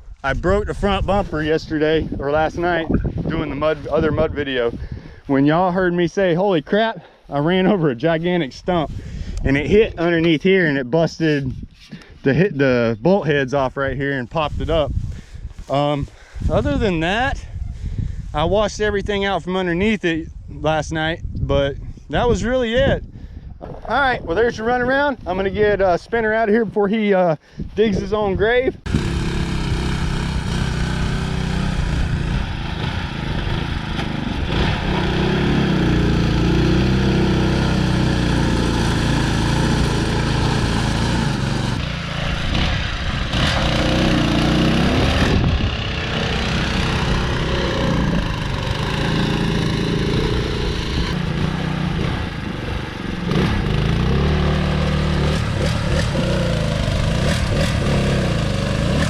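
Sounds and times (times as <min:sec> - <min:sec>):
mower engine running under load: 0:28.9 - 0:59.0.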